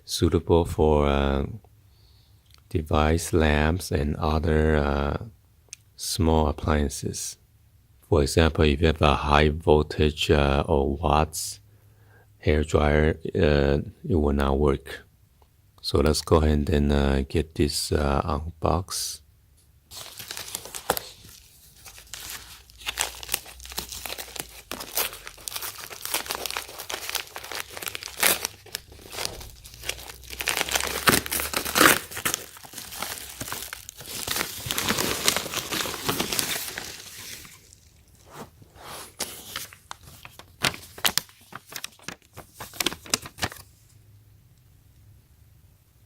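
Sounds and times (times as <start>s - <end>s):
packaging crinkling and tearing: 19.9s - 43.8s.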